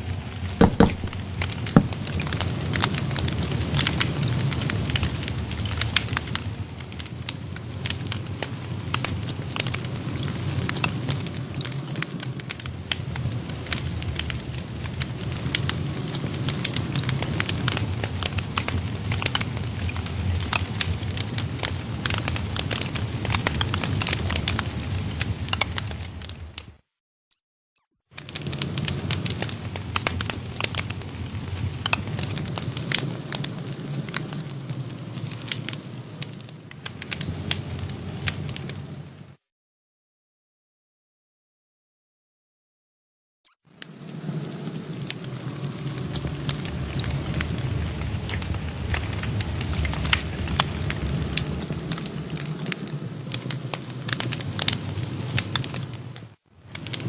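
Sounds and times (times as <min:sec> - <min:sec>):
rush of flames: 0:00.0 - 0:26.7, 0:27.9 - 0:39.4, 0:43.6 - 0:57.0
wood crackling and popping: 0:00.0 - 0:26.8, 0:27.9 - 0:39.4, 0:43.7 - 0:57.0
fire low rumble: 0:00.0 - 0:26.9, 0:28.1 - 0:39.5, 0:43.6 - 0:57.0
high squeaks from fire: 0:01.0 - 0:02.5, 0:09.0 - 0:10.7, 0:14.0 - 0:15.0, 0:16.6 - 0:17.4, 0:22.0 - 0:25.3, 0:27.3 - 0:29.8, 0:31.7 - 0:37.9, 0:43.5 - 0:47.4, 0:52.0 - 0:54.7.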